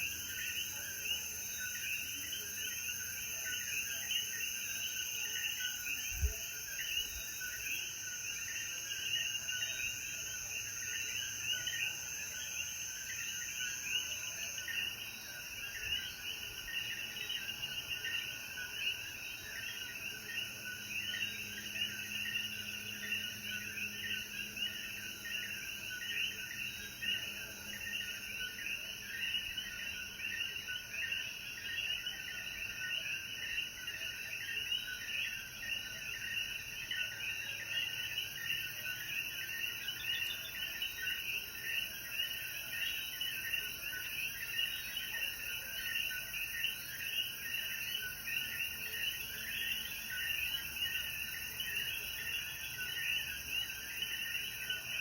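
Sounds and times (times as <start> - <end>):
frogs chirping: 0.0 - 55.0.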